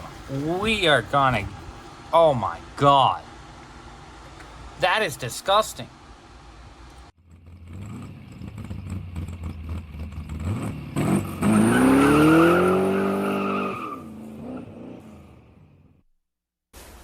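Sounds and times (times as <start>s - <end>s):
car engine revving: 7.2s - 15.9s.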